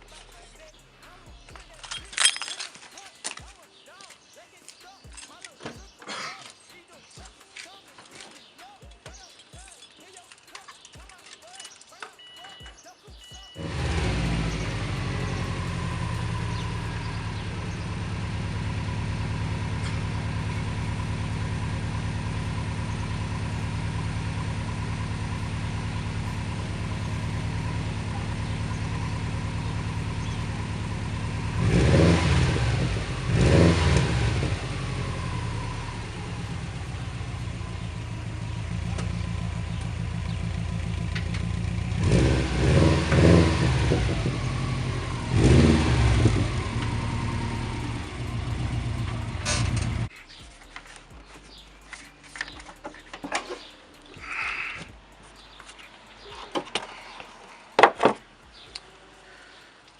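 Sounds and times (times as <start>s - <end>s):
engine revving blips: 13.3s - 50.5s
car engine idling: 13.6s - 59.9s.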